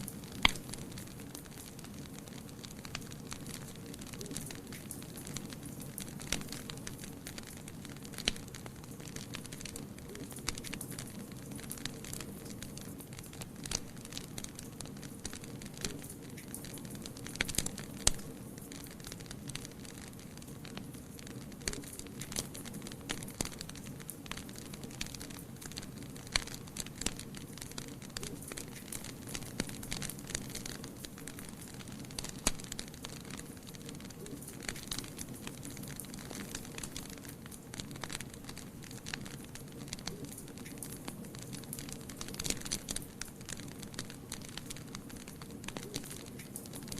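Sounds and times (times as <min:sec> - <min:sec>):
wood fire crackling: 0:00.0 - 0:46.9.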